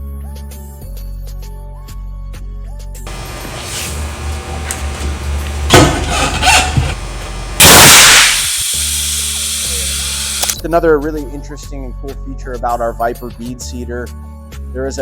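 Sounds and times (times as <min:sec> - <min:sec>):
loud compressed air blast: 0:03.1 - 0:10.6
sharp cracks: 0:07.2 - 0:10.6.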